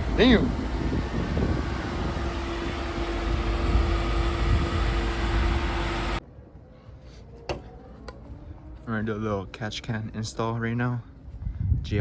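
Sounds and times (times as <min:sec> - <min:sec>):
car engine droning: 0:00.0 - 0:06.2.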